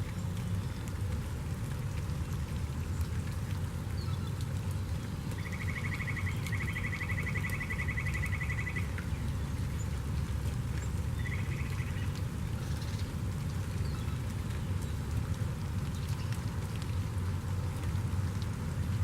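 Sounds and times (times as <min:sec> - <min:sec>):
steady rain: 0:00.0 - 0:19.0
songbird trilling: 0:05.4 - 0:08.9.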